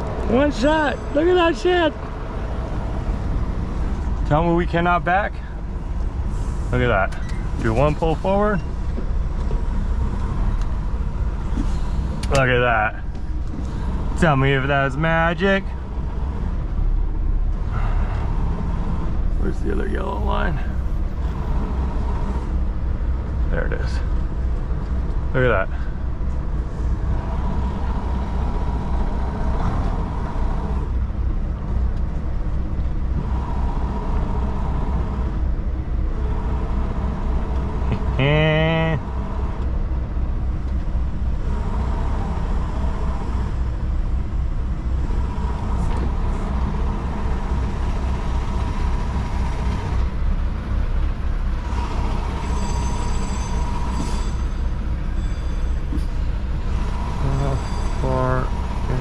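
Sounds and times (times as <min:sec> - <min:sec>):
truck diesel engine rumbling: 0:00.0 - 0:59.0
brief pitched squeal: 0:52.4 - 0:56.3, 0:57.1 - 0:58.5.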